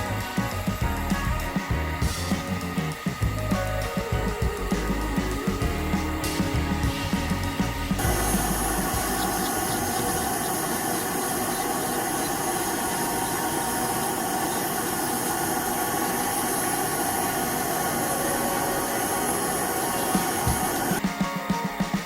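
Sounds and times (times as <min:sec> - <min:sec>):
electric nail drill whirring: 0:07.9 - 0:21.0.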